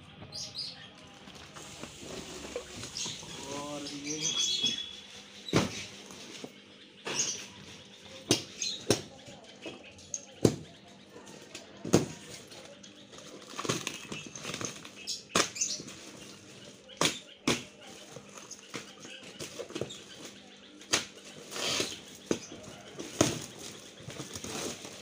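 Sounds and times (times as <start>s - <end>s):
plastic bags rustling: 1.1s - 6.1s.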